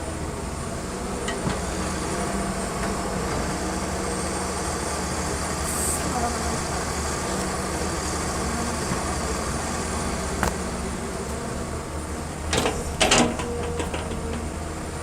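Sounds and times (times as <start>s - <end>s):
diesel engine running: 0.0s - 15.0s
metallic clanks: 12.5s - 14.4s.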